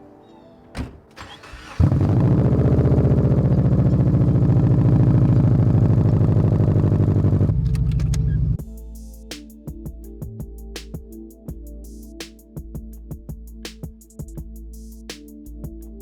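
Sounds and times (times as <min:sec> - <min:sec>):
diesel engine through open exhaust: 0:01.8 - 0:08.6.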